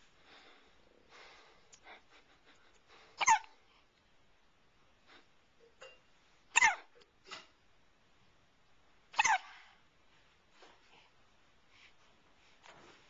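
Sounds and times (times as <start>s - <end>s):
baby hiccuping: 3.2s - 3.5s, 6.6s - 6.9s, 9.2s - 9.4s.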